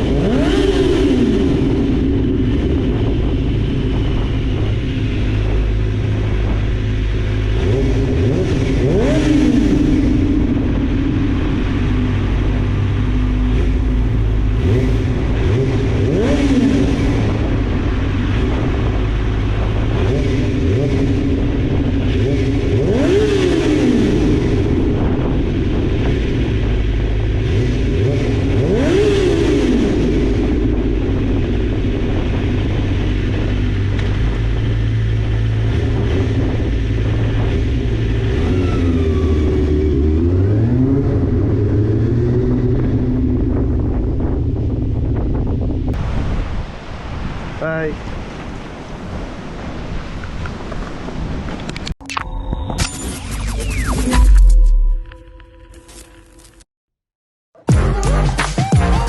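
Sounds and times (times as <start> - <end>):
motorcycle engine revving: 0.0 - 46.0.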